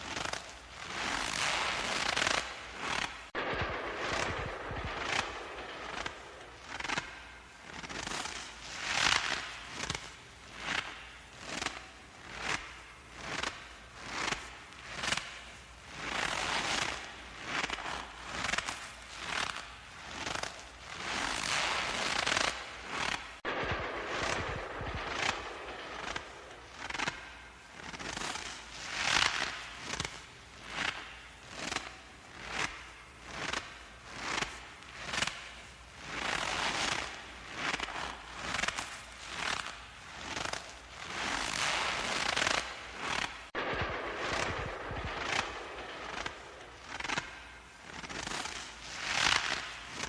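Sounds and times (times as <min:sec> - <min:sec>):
footsteps crunching in snow: 0:00.0 - 0:50.0.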